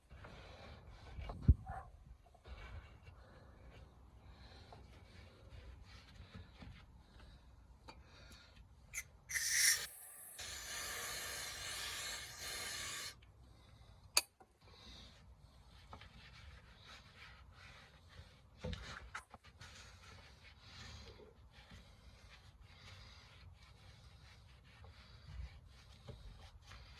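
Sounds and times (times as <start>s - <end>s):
rubbing and wiping parts: 9.0s - 13.1s, 14.7s - 26.9s
aerosol spray hissing: 9.3s - 13.2s.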